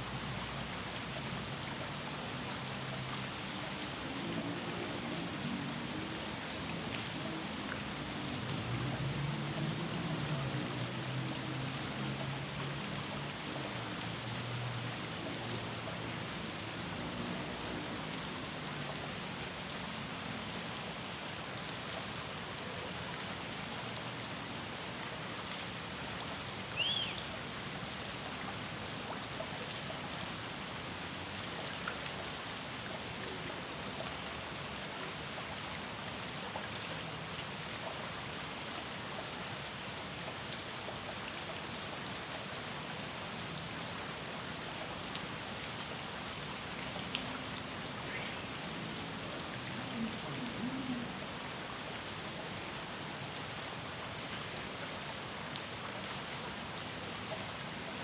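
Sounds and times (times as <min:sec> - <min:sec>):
rain falling on water: 0:00.0 - 0:58.0.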